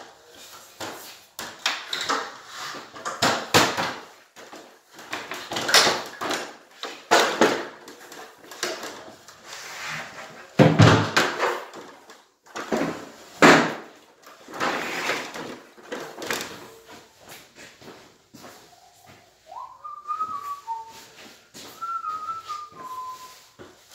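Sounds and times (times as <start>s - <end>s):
handling rustles and scrapes: 6.4s - 10.6s, 11.4s - 23.9s.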